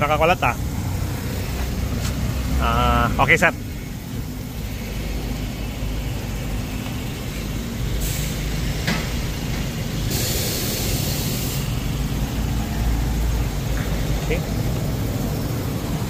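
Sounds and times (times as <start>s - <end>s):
low engine rumble: 0.0s - 16.0s
compressed air hiss: 7.2s - 12.6s.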